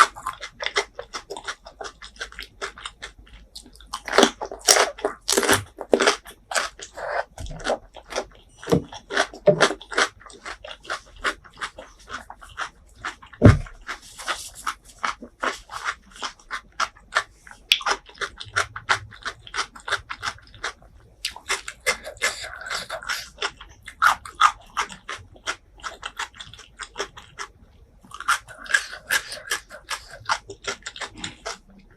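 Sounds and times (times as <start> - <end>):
person chewing with mouth sounds: 0.0 - 31.9.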